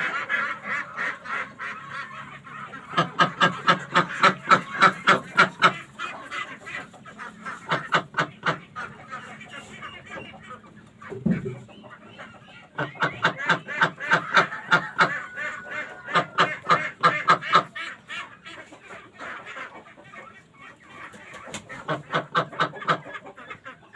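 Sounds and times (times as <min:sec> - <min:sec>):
ducks quacking: 0:00.0 - 0:23.9.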